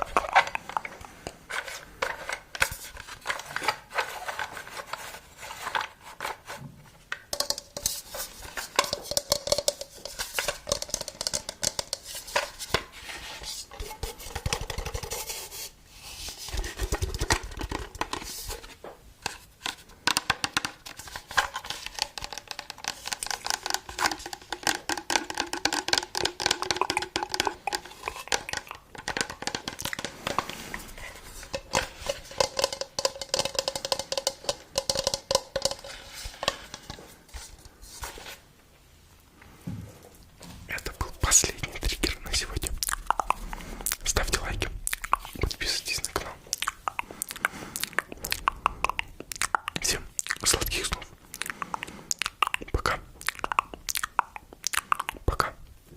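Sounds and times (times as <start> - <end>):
taps clicks and scratches: 7.3 - 12.9, 13.6 - 15.5, 16.4 - 37.1, 40.7 - 55.6.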